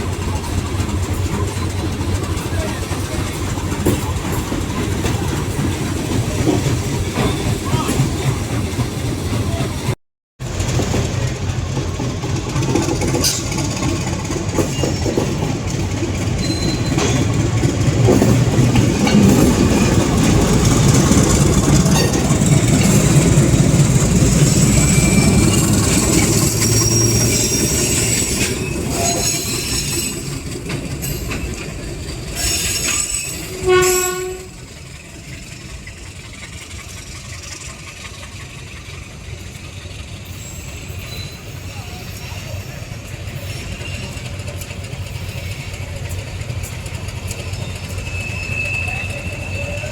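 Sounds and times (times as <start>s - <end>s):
train wheels rumbling on rails: 0.0s - 49.9s
high-pitched wheel squeals: 16.4s - 17.3s, 24.3s - 31.6s, 32.4s - 34.6s, 40.3s - 42.8s, 43.4s - 44.4s, 47.3s - 49.9s
train horn blast: 33.4s - 34.6s.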